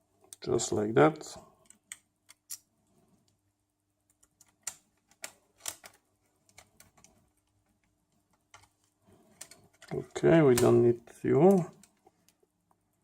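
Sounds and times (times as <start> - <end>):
small metal parts clicking: 1.6 - 2.7.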